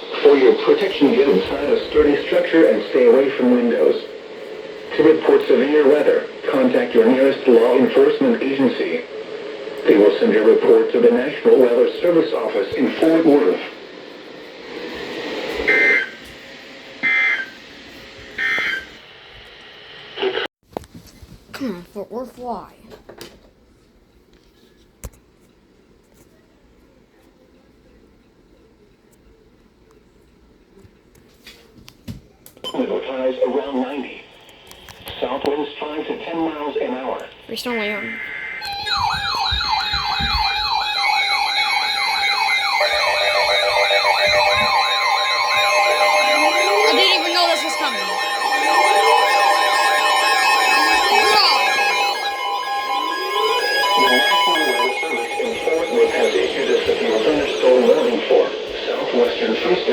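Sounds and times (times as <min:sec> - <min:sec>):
electronic yelp siren: 0:00.0 - 0:19.1, 0:37.7 - 0:59.9
radio hiss: 0:00.0 - 0:20.5, 0:32.7 - 0:59.9
raspy digital warbles: 0:37.7 - 0:59.9.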